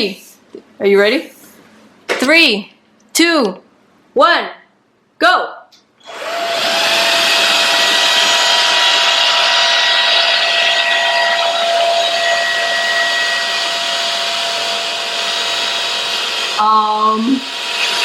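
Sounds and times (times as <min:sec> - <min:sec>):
stick vacuum motor whine: 0:06.0 - 0:18.0.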